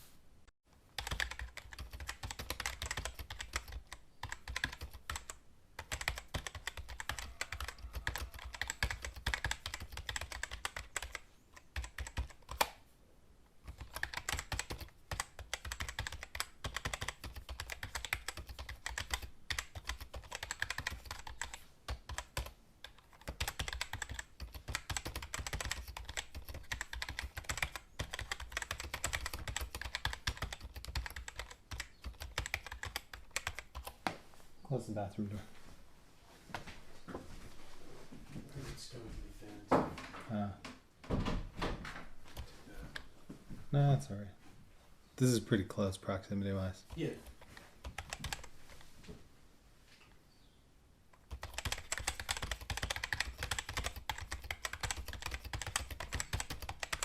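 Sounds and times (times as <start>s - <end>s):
typing on computer keyboard: 1.0s - 12.8s, 13.6s - 34.0s, 46.9s - 48.5s, 51.2s - 57.0s.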